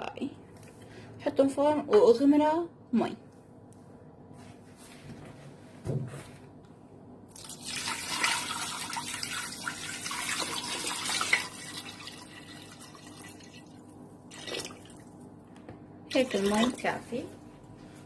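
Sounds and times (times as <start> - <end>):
water running into a pot: 7.3 - 15.2.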